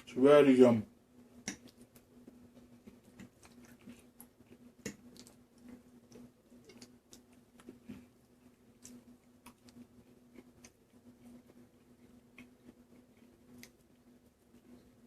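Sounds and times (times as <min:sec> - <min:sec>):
low steady hum: 0:00.0 - 0:15.0
person chewing pasta: 0:01.2 - 0:15.0.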